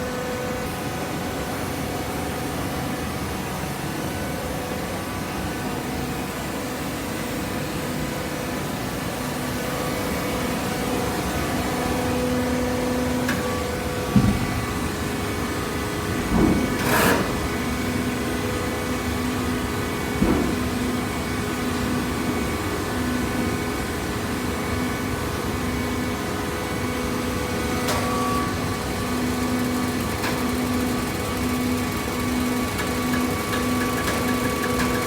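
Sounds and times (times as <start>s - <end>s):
baler machine hum: 26.1s - 35.0s.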